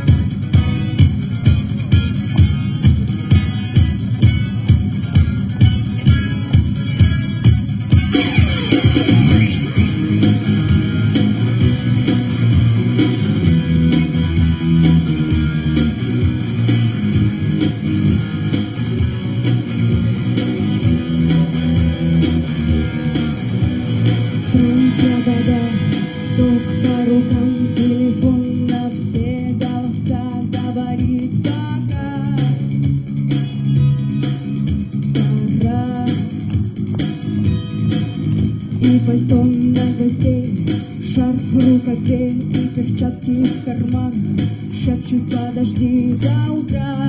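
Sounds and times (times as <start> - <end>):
bass line: 0.0 - 47.0
rock guitar: 0.0 - 47.0
steady drum beat: 0.0 - 47.0.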